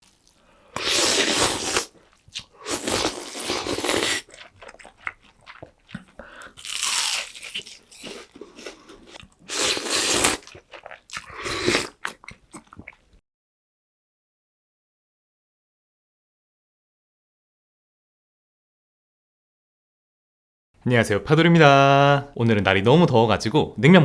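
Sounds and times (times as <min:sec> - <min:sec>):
crunching bites of fried food: 0:00.0 - 0:13.0.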